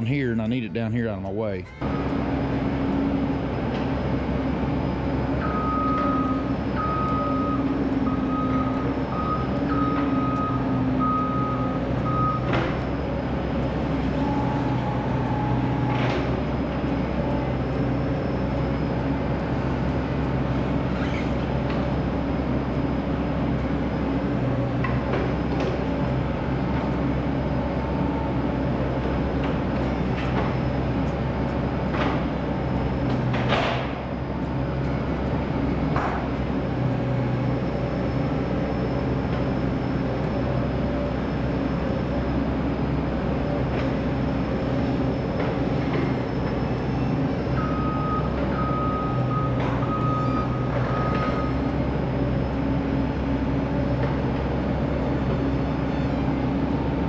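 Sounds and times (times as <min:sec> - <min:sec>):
travel alarm beeping: 0:00.0 - 0:20.7, 0:44.2 - 0:52.8
diesel engine running: 0:00.0 - 0:57.0.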